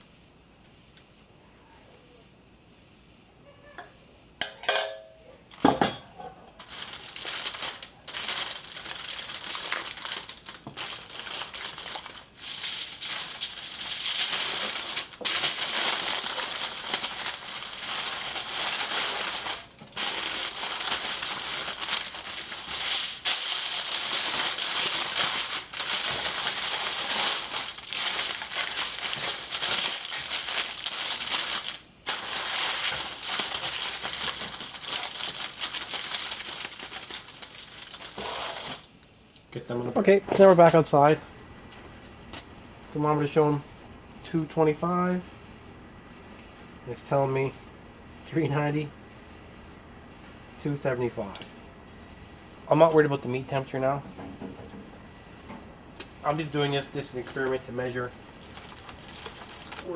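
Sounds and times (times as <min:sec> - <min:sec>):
aluminium foil crinkling: 0:05.2 - 0:39.1, 0:50.1 - 0:59.9.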